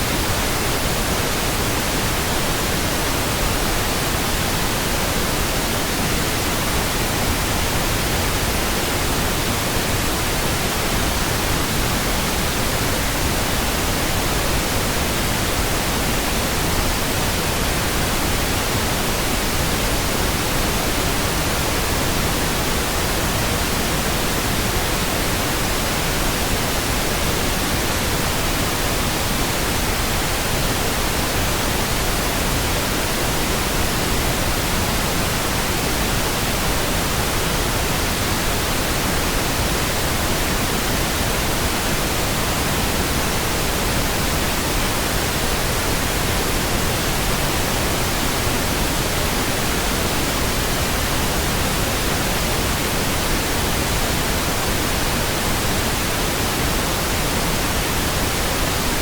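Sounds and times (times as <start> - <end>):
pink noise hiss: 0.0 - 59.0.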